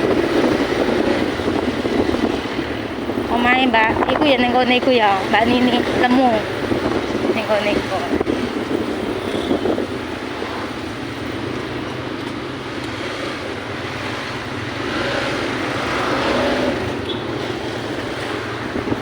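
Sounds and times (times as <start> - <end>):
motorbike engine hum: 0.0 - 19.0
road and wind noise: 0.0 - 19.0.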